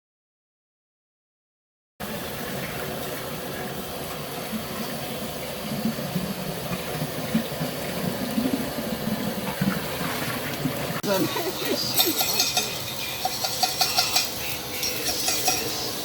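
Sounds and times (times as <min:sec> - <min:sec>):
liquid bubbling and sloshing: 0:02.0 - 0:16.0
steady machine hiss: 0:11.1 - 0:16.0.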